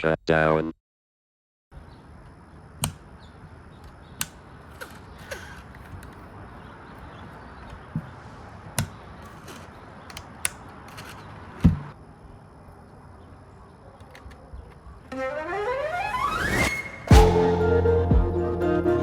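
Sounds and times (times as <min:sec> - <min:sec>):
sharp knocks and clicks: 0:02.8 - 0:03.1, 0:08.7 - 0:12.0
rising swept tone: 0:15.2 - 0:19.0
music: 0:16.6 - 0:19.0.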